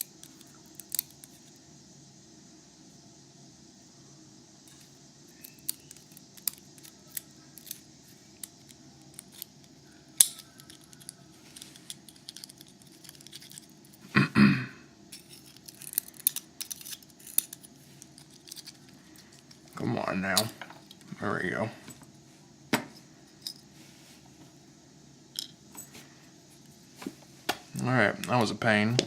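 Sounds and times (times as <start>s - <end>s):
tiny metal pins clicking: 0.0s - 1.4s, 4.7s - 7.8s, 8.4s - 14.0s, 15.1s - 21.0s.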